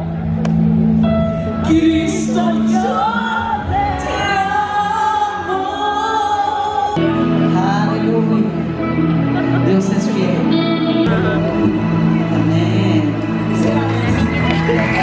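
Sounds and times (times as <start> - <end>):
worship song with singing: 1.6 - 15.0.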